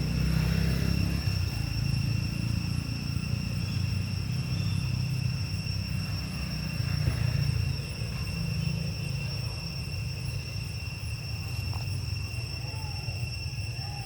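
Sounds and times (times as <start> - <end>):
high-pitched insect drone: 0.0 - 14.0.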